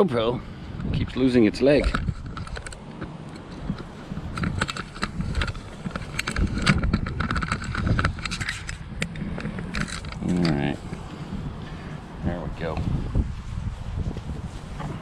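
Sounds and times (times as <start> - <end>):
camera handling clicks and knocks: 1.8 - 11.0.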